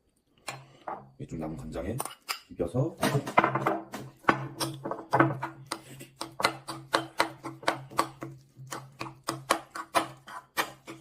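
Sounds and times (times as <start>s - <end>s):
spoon scraping against bowl: 9.7s - 11.0s.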